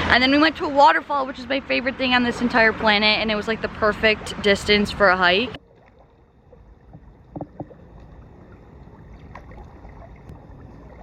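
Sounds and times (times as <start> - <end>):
low outdoor rumble: 0.0 - 11.0
faint knocks: 6.9 - 7.8.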